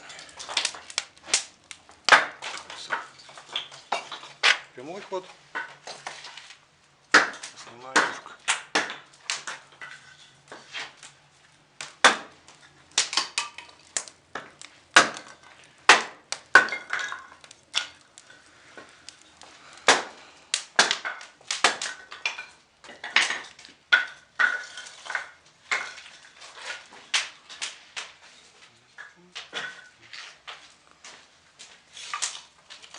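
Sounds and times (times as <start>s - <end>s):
cast-iron stove dampers clanking: 12.6s - 15.7s.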